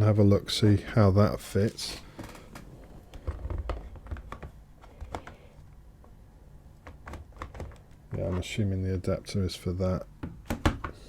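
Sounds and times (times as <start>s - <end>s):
plastic parts clicking together: 2.2s - 6.2s, 6.8s - 8.0s.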